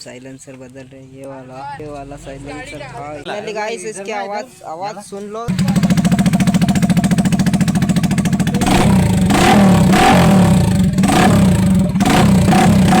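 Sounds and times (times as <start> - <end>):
motorcycle engine idling and revving: 5.5 - 13.0.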